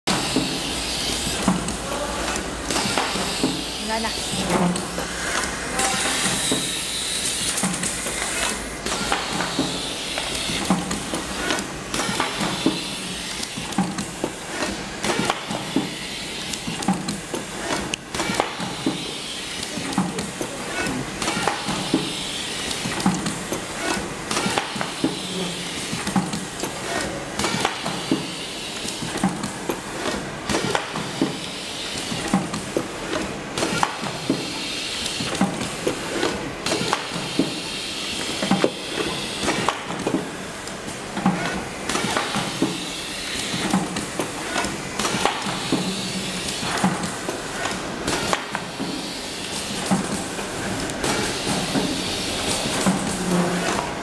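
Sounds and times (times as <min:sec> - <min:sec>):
welding machine clacks and knocks: 0:07.4 - 0:37.6, 0:38.2 - 0:48.9.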